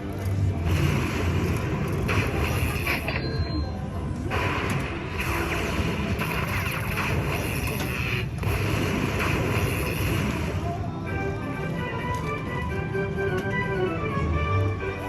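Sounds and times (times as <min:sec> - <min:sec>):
slot machine spin effects: 0:00.6 - 0:14.4
slot machine game music: 0:08.8 - 0:15.0.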